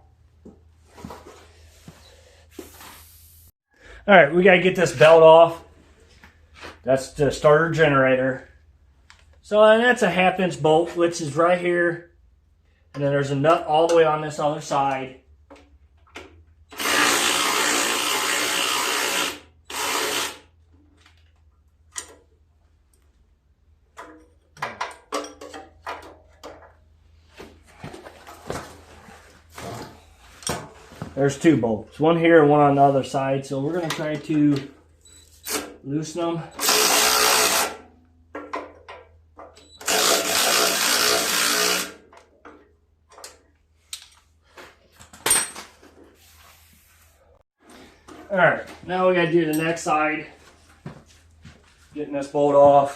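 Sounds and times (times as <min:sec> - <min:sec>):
power tool running: 0:16.7 - 0:20.4, 0:36.6 - 0:37.8, 0:39.8 - 0:42.0.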